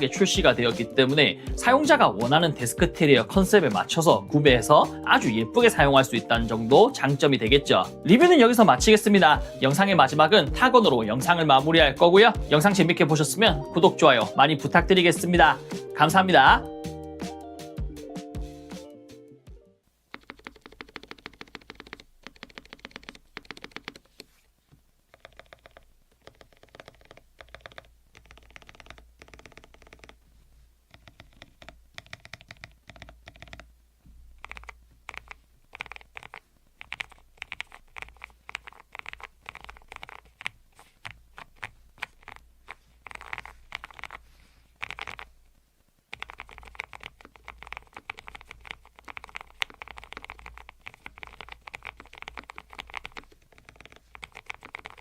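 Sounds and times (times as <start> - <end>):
mechanical keyboard typing: 20.1 - 24.2, 25.1 - 30.2, 30.9 - 33.7, 34.4 - 44.2, 44.8 - 45.3, 46.1 - 55.0.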